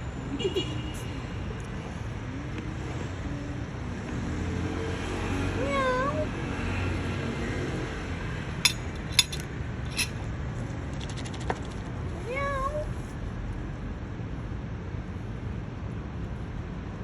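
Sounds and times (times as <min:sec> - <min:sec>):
low background hum: 0:08.7 - 0:10.3
cat meowing: 0:12.2 - 0:12.9.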